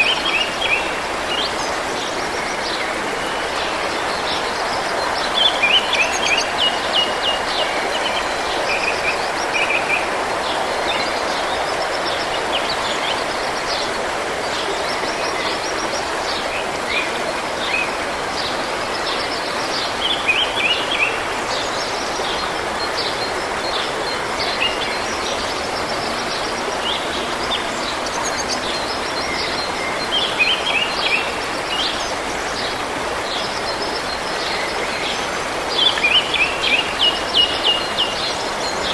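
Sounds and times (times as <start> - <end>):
stream of water rushing: 0.0 - 38.9.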